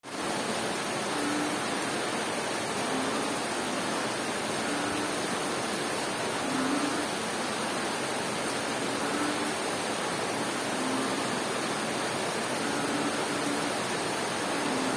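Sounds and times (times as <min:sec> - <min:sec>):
heavy rain: 0:00.0 - 0:14.9
frog calling: 0:01.1 - 0:01.6, 0:02.8 - 0:03.4, 0:04.6 - 0:05.2, 0:06.4 - 0:07.1, 0:09.0 - 0:09.6, 0:10.7 - 0:11.3, 0:12.6 - 0:13.8.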